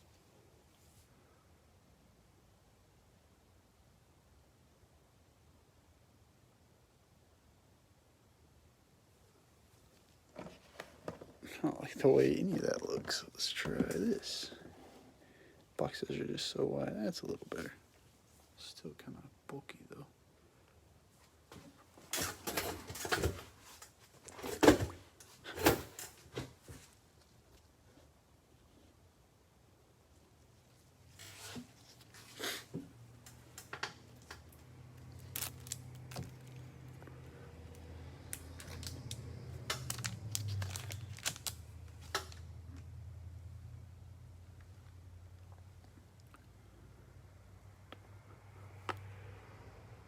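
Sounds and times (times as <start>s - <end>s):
cardboard packaging crinkling: 35.0s - 37.0s, 38.3s - 42.4s.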